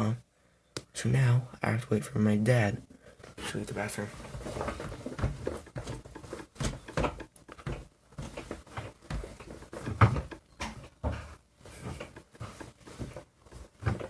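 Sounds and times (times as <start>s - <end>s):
desk chair squeaking and creaking: 3.3s - 14.0s
chair knocks: 4.7s - 14.0s.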